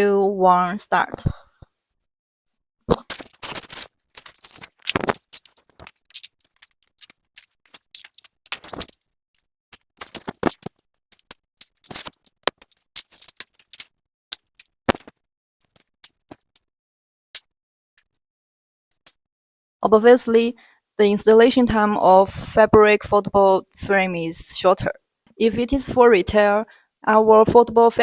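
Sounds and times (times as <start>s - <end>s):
metal tubes clicking and rattling: 3.1s - 9.0s, 9.8s - 15.1s
scraping and rustling: 3.1s - 9.0s, 9.8s - 15.1s.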